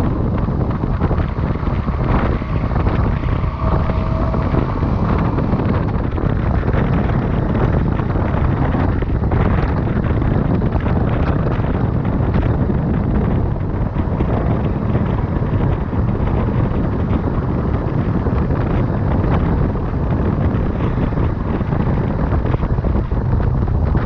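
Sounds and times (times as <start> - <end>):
motorcycle engine: 0.0 - 23.8
road noise: 0.0 - 24.0
wind buffeting microphone: 0.0 - 24.0.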